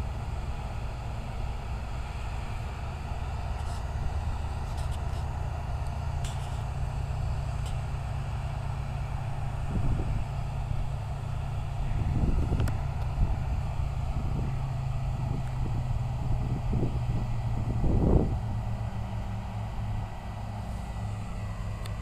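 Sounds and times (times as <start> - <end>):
diesel machinery droning: 0.0 - 22.0.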